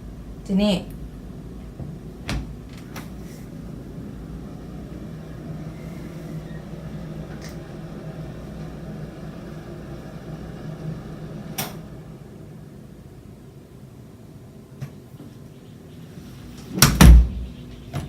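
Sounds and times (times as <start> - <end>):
low room hum: 0.0 - 18.0.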